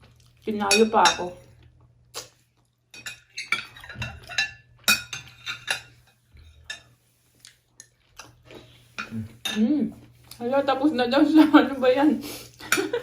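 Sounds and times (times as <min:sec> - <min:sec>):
spoons clinking against bowls: 0:00.6 - 0:01.4, 0:02.9 - 0:06.9, 0:12.6 - 0:13.0.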